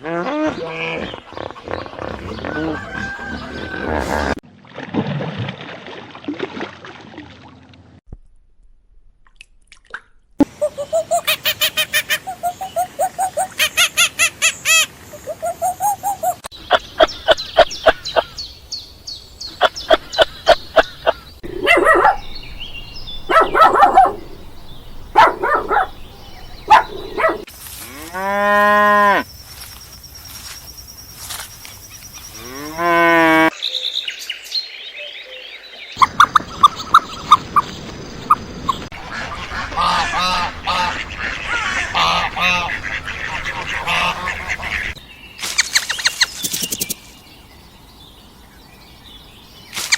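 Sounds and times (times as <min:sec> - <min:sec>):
animal calls: 0:19.6 - 0:27.5, 0:38.9 - 0:45.0.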